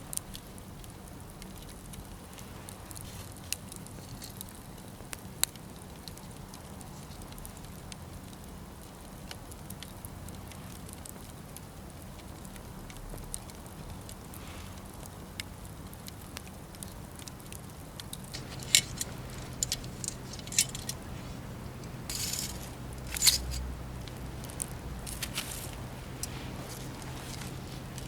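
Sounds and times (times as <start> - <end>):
wood fire crackling: 0.0 - 28.0
low hum: 18.3 - 28.0.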